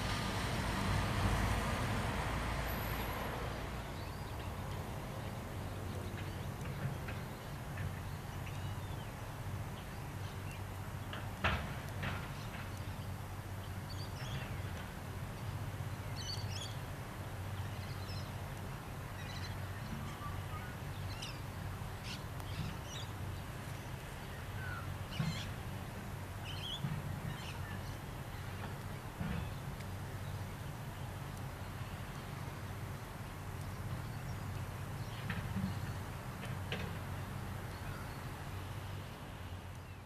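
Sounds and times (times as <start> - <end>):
birds chirping: 17.5 - 25.8, 26.4 - 36.2.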